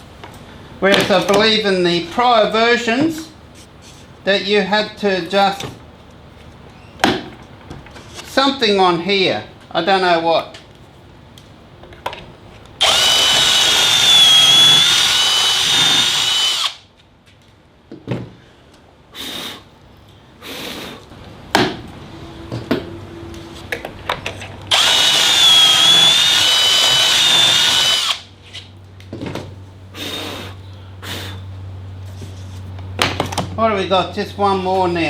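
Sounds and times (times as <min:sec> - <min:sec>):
drill whining into wood: 0:12.8 - 0:16.8, 0:24.7 - 0:28.2.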